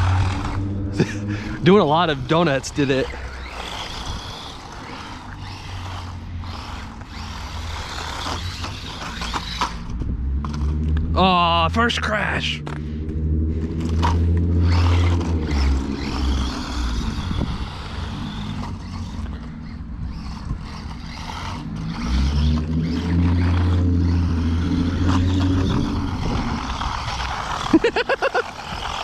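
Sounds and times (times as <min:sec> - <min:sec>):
toy truck electric motor: 0:00.0 - 0:11.0, 0:13.8 - 0:29.0.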